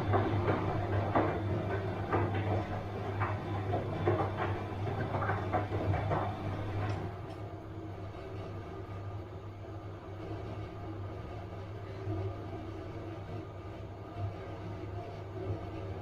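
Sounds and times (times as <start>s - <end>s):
laundry tumbling in drum: 0.0s - 7.2s
washing machine hum: 0.0s - 16.0s.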